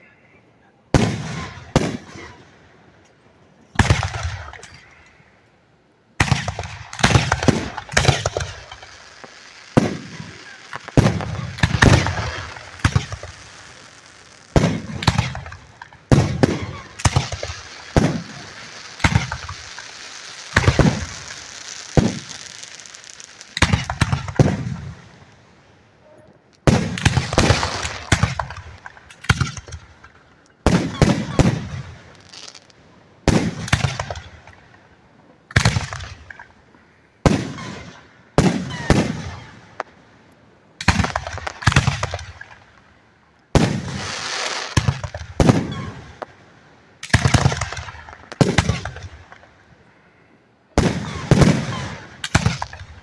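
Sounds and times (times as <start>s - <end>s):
firework shells bursting: 6.2s - 25.3s, 26.5s - 34.8s.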